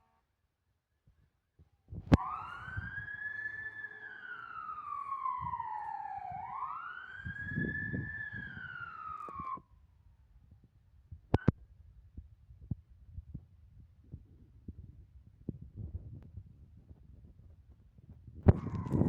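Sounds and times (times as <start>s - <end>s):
fire engine siren wailing: 2.1s - 9.6s, 18.5s - 19.0s.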